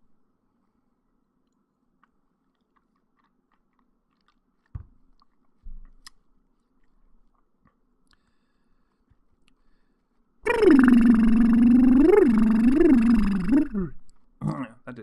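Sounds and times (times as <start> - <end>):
mouth clicks and smacks: 10.5 - 14.2.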